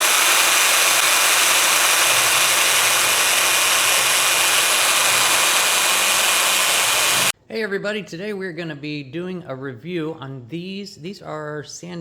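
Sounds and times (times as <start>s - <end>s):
electric drill sanding whir: 0.0s - 7.3s.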